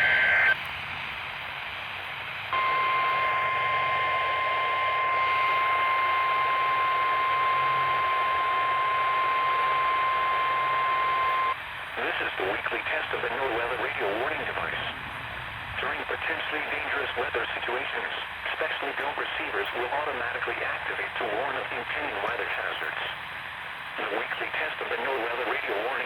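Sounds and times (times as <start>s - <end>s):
radio hiss: 0.0s - 0.6s, 2.5s - 26.0s
steady weather alarm tone: 0.0s - 0.6s, 2.5s - 14.9s.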